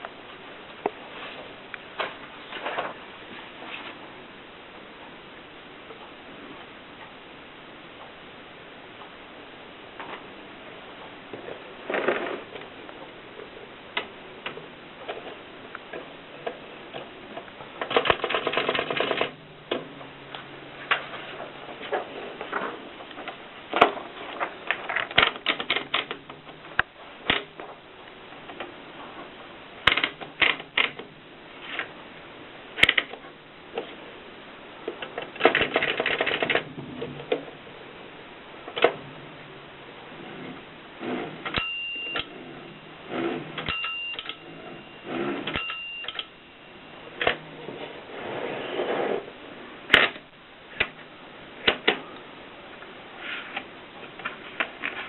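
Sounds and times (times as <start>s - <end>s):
typewriter clicks and clacks: 17.8s - 19.4s, 24.9s - 26.2s, 29.8s - 31.0s, 32.8s - 33.2s, 35.0s - 36.7s
short high ring: 41.6s - 42.2s.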